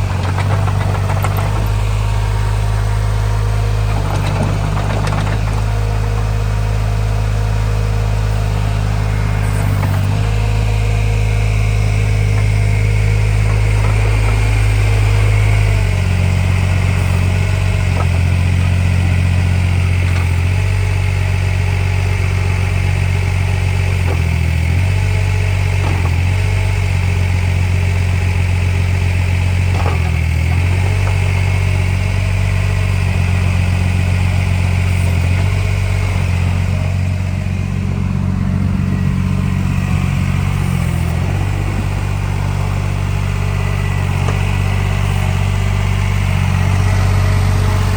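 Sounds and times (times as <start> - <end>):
excavator diesel engine running: 0.0 - 47.9
faint clunks: 3.8 - 5.8.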